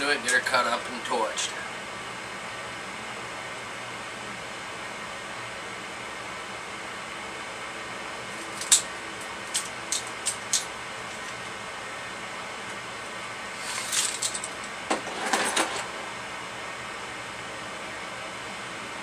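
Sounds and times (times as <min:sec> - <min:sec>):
rustling and scraping: 0:13.5 - 0:16.0.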